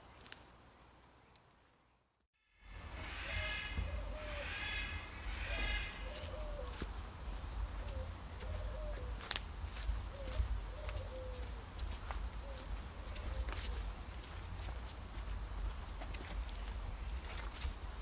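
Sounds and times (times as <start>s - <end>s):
pigeon cooing: 3.2s - 4.6s, 5.4s - 6.8s, 7.8s - 9.2s, 10.1s - 11.5s.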